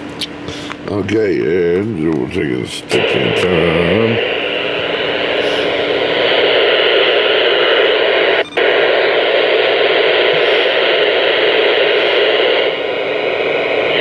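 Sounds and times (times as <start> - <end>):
radio static hiss: 0.8 - 14.0.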